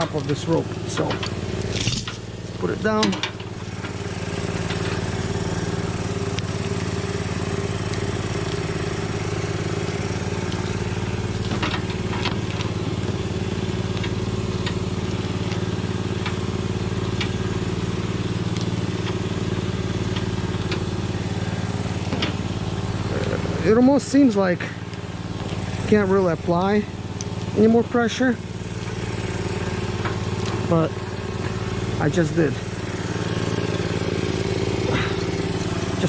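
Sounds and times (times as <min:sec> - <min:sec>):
engine humming: 0:00.0 - 0:36.0.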